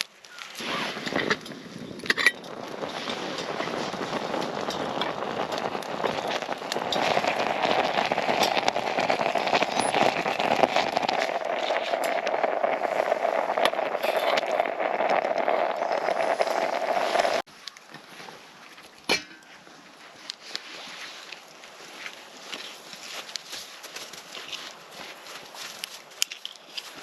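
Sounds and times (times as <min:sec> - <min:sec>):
food sizzling and crackling: 0:00.3 - 0:17.5.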